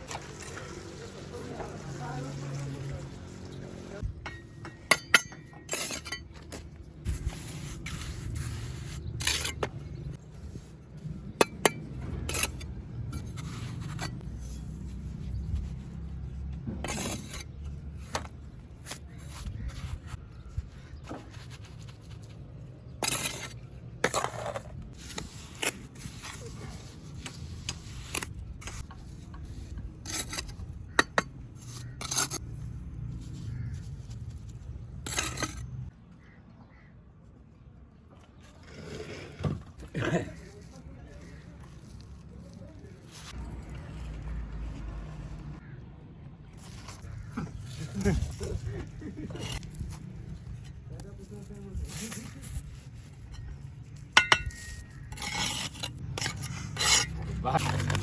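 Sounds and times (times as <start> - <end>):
trowel scraping mortar: 4.0 - 35.9, 38.4 - 45.7, 46.6 - 58.0
trowel knocking on bricks: 54.1 - 58.0.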